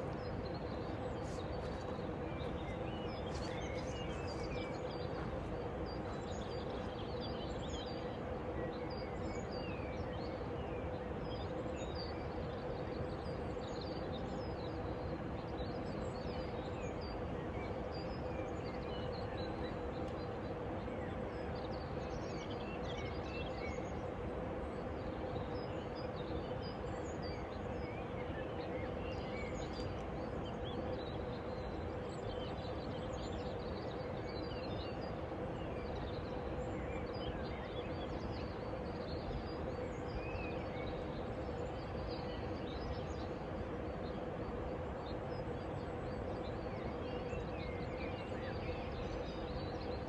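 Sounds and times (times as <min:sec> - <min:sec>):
steady background rush: 0:00.0 - 0:08.8
small birds chirping: 0:00.0 - 0:24.2
faint steady hum: 0:00.0 - 0:50.0.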